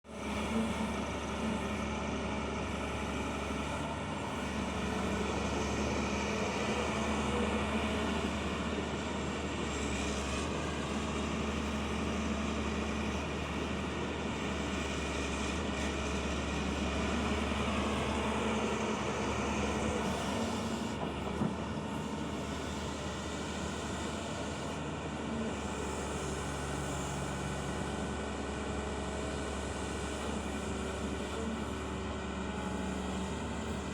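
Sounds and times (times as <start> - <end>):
excavator engine running: 0.1 - 33.9.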